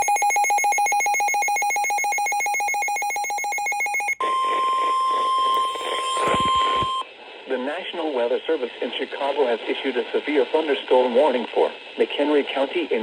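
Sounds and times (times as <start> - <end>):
rapid electronic alarm beeping: 0.0 - 7.0
steady single-pitch alarm tone: 0.0 - 7.0
radio static hiss: 4.2 - 13.0.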